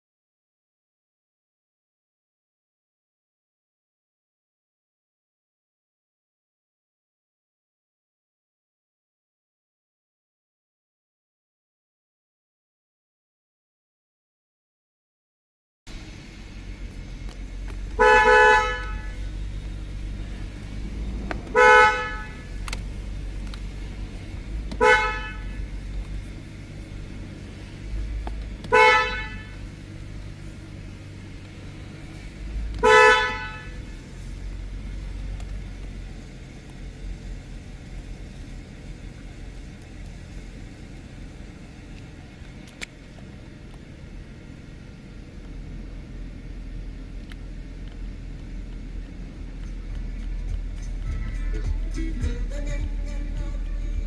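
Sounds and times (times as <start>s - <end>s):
low steady hum: 15.9s - 54.0s
car horn honks: 17.8s - 26.0s, 27.4s - 29.9s, 32.7s - 34.1s, 50.8s - 54.0s.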